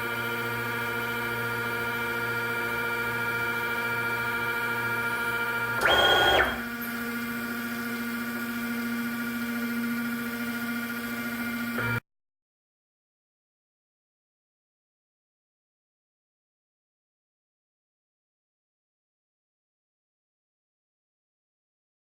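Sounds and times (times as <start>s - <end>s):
stepper motors whining: 5.8s - 6.9s.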